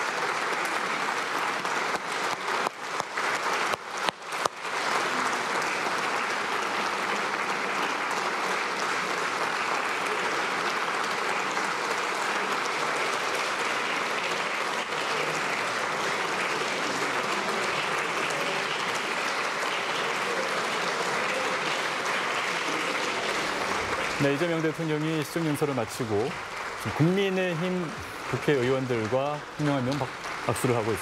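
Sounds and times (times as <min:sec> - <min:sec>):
large audience applauding: 0:00.0 - 0:31.0.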